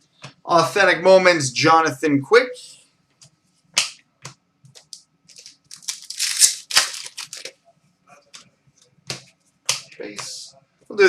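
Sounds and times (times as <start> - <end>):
cards rustling and sliding: 4.7 - 7.5.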